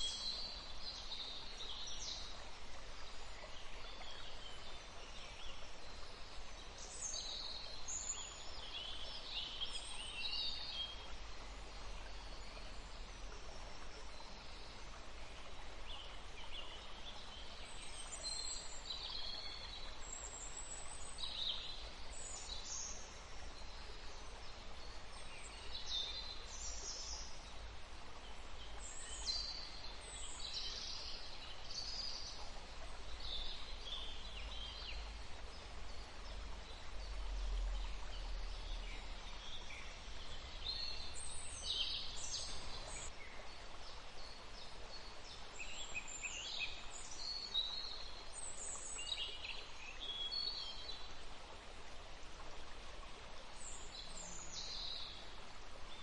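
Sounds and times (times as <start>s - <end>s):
faint background hiss: 0.0s - 56.0s.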